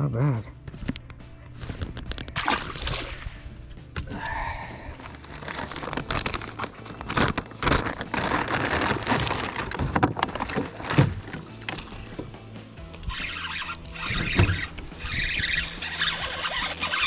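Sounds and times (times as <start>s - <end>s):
plastic packaging crinkling: 4.7s - 12.3s.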